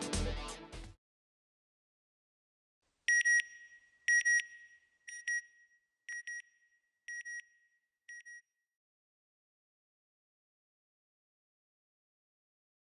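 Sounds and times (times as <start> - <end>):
electronic alarm double beeps: 3.1 - 8.5.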